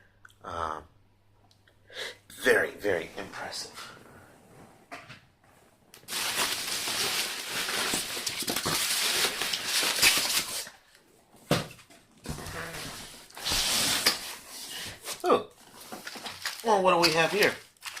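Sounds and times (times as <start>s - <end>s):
packaging crinkling and rustling: 6.0s - 11.1s, 11.8s - 18.0s.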